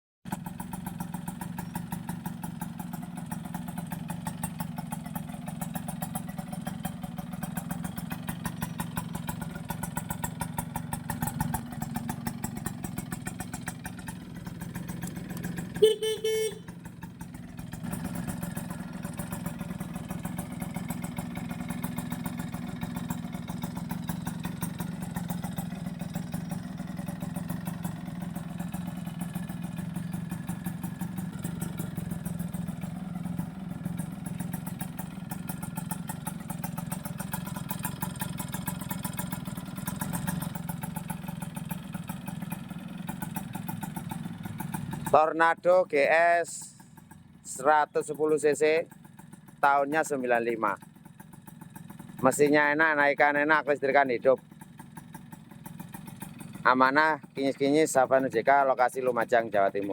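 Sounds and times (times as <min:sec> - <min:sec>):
two-stroke engine idling: 0:00.3 - 0:59.9
short horn beep: 0:15.8 - 0:16.8.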